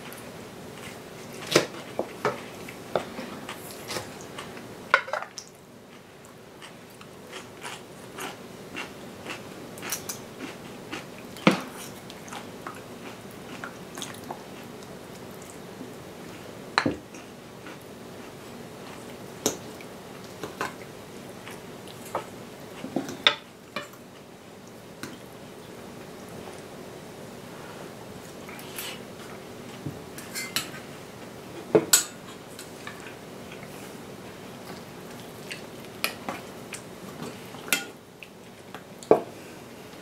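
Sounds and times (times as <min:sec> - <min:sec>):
chewing: 0:05.4 - 0:15.6, 0:32.9 - 0:37.6.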